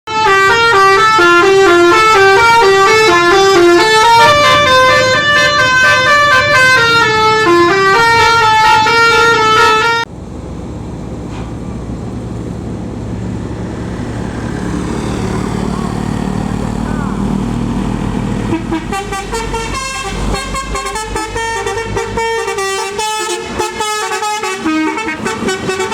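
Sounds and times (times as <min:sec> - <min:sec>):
multi-tone air horn melody: 0:00.1 - 0:10.1, 0:18.5 - 0:25.9
engine and road noise: 0:00.1 - 0:25.9.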